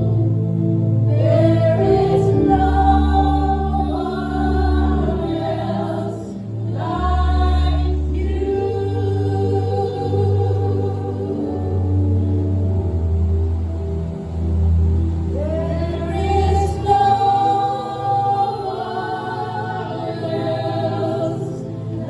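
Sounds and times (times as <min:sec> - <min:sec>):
gospel singing: 0:00.0 - 0:22.0
held accompaniment chords: 0:00.0 - 0:22.0.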